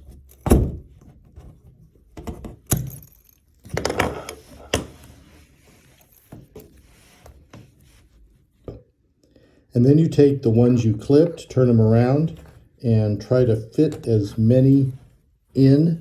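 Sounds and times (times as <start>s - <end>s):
small clicks and handling rustle: 1.1s - 8.1s.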